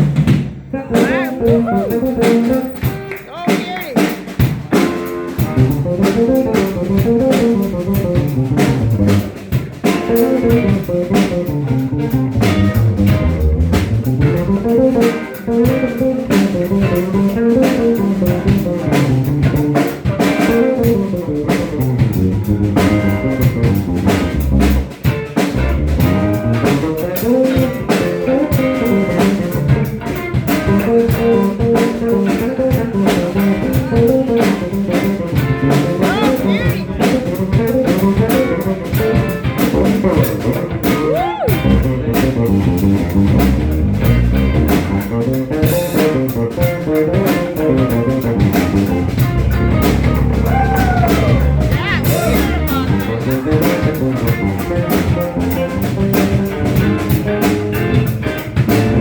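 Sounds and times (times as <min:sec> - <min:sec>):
drum kit: 0:00.0 - 0:59.0
guitar: 0:00.0 - 0:59.0
repeating bass line: 0:00.8 - 0:03.1, 0:05.6 - 0:09.4, 0:10.4 - 0:19.8, 0:20.4 - 0:29.9, 0:41.6 - 0:57.1.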